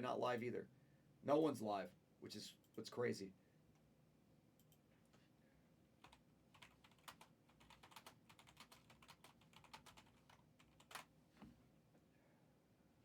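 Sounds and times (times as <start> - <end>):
keyboard typing clicks: 6.0 - 11.1.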